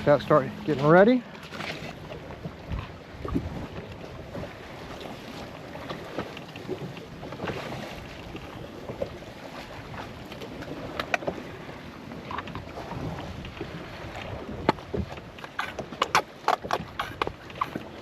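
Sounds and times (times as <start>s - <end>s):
wind noise on microphone: 1.6s - 5.0s, 12.5s - 18.0s.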